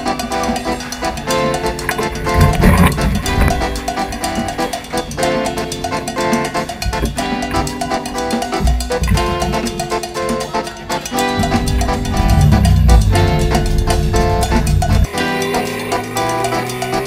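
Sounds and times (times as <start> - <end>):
background music with drum beat: 0.0 - 17.0
heavy bass line: 2.1 - 3.8, 11.3 - 15.1.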